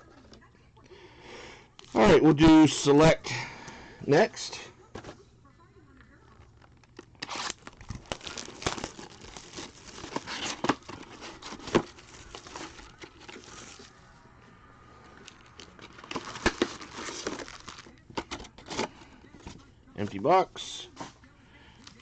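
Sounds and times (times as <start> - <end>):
wrappers crinkling: 6.3 - 14.0, 15.1 - 19.1
card packs torn open: 6.5 - 13.9, 15.2 - 19.1.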